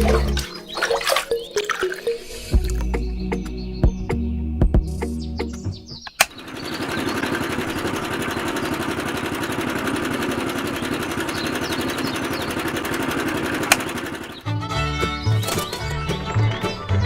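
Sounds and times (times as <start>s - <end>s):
small motor running steadily: 6.3s - 14.4s.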